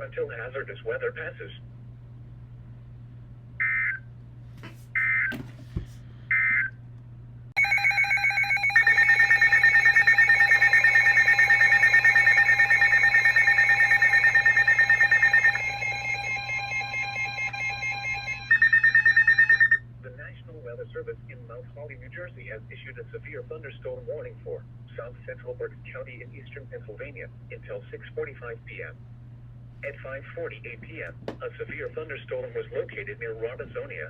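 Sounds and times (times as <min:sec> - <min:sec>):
pulsing multi-tone alert signal: 0:07.6 - 0:19.8.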